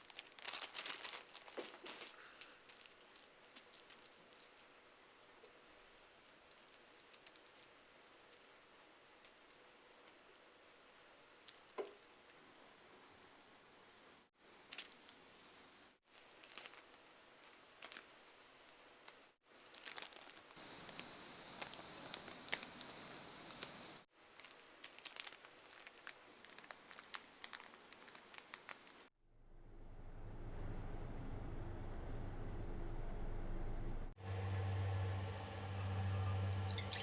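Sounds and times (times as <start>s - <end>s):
plastic packaging crinkling: 0.0s - 4.7s, 16.1s - 18.1s, 19.6s - 23.7s, 24.3s - 29.0s
steady hiss: 20.6s - 24.1s.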